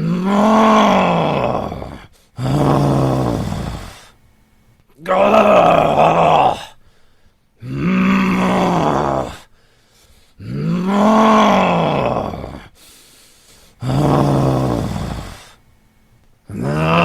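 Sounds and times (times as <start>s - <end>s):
man grunting and growling: 0.0s - 4.0s, 5.0s - 6.8s, 7.6s - 9.4s, 10.4s - 12.7s, 16.5s - 17.0s.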